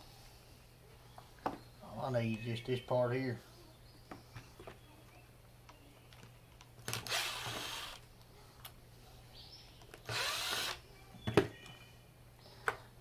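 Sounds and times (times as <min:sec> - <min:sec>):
power drill running: 0:06.9 - 0:08.0, 0:10.1 - 0:10.8.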